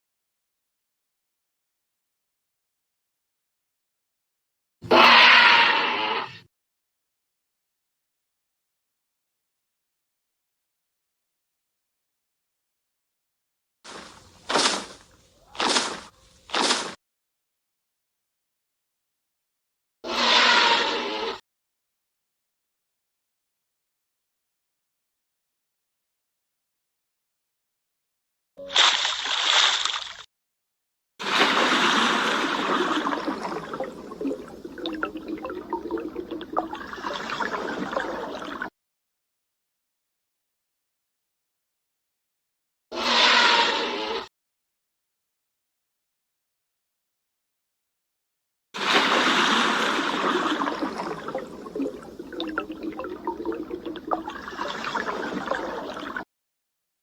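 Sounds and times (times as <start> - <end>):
rushing water: 28.7 - 30.2, 31.2 - 38.7, 48.8 - 56.2
water gurgling and bubbling: 31.2 - 38.7, 48.8 - 56.2.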